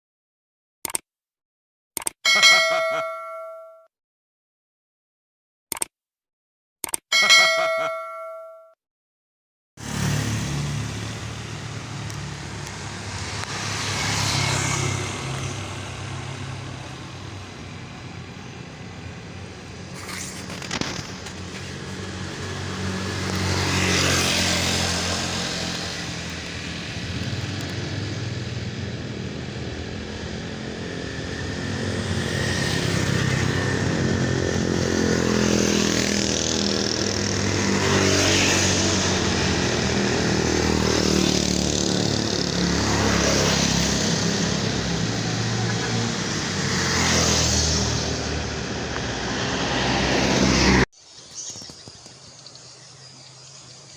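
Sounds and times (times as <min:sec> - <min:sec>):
vehicle engines passing: 0:09.8 - 0:50.9.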